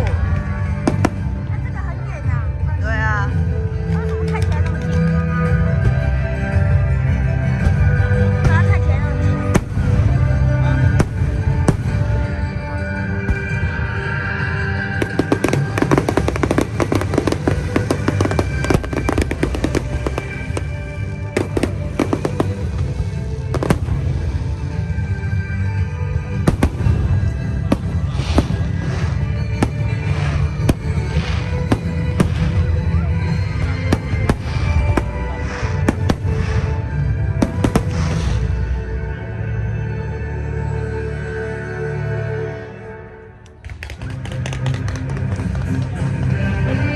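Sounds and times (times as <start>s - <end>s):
fireworks bursting and crackling: 0.0s - 1.9s, 9.4s - 12.6s, 14.9s - 25.1s, 26.2s - 38.9s
music: 0.0s - 46.9s.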